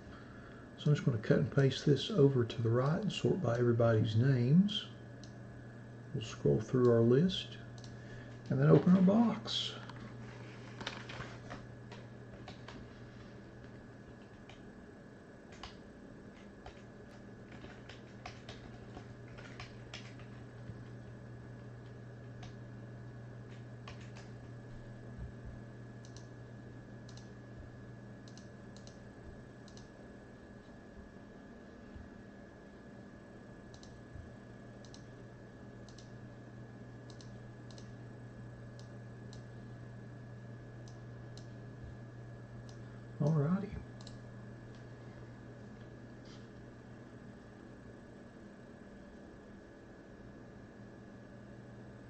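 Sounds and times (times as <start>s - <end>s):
low electrical hum: 0.0s - 52.0s
computer mouse clicking: 10.6s - 14.6s, 15.5s - 21.0s, 23.5s - 24.4s, 26.0s - 26.3s, 27.1s - 27.4s, 28.2s - 29.0s, 29.6s - 30.0s, 33.7s - 34.0s, 34.8s - 35.1s, 35.8s - 36.2s, 37.1s - 38.0s, 38.8s - 39.5s, 40.8s - 41.6s, 44.0s - 44.9s.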